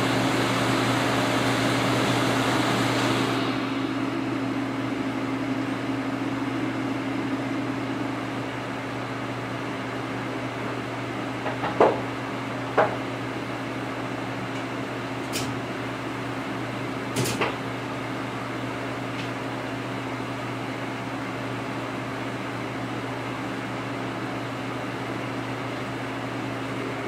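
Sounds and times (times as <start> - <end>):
electric motor hum: 0.0 - 5.8.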